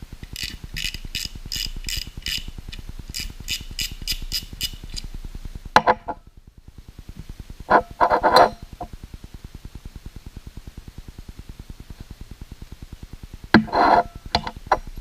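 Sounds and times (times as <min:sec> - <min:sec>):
fishing reel ratchet clicks: 0:00.2 - 0:05.1.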